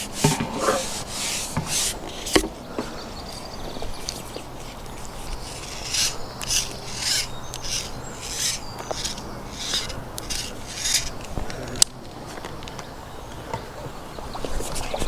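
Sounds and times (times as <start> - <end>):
rasping rubbing strokes: 0.0 - 2.5, 4.0 - 11.4.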